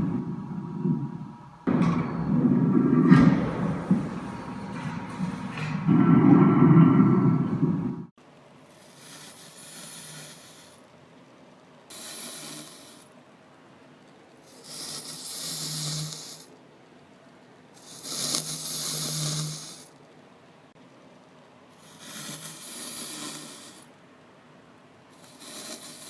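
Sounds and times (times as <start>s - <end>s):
low-pitched sound: 0.0s - 8.1s
machine snoring breaths: 0.0s - 10.9s, 11.9s - 13.2s, 14.4s - 16.5s, 17.8s - 20.0s, 21.7s - 24.0s, 25.1s - 26.0s.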